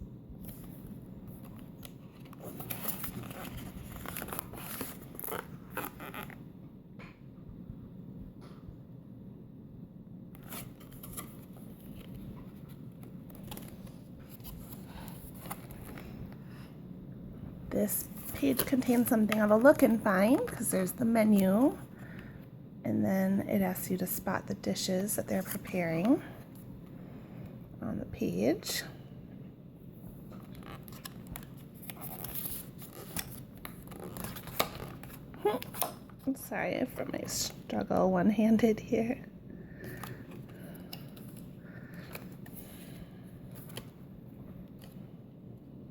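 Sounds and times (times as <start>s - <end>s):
light paper rustles: 0.4s - 6.0s
book pages turning: 0.4s - 6.4s, 10.3s - 16.2s, 18.0s - 20.7s, 30.3s - 37.6s, 39.8s - 45.0s.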